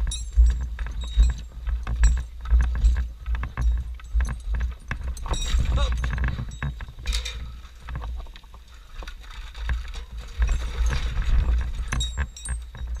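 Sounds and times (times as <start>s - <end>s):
clicks and knocks of handled gear: 0.0s - 13.0s
wind rumble on microphone: 0.0s - 13.0s.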